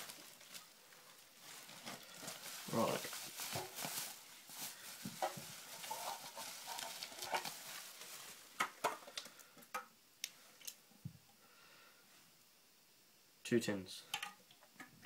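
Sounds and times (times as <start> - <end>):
packaging crinkling and rustling: 0.0 - 9.4.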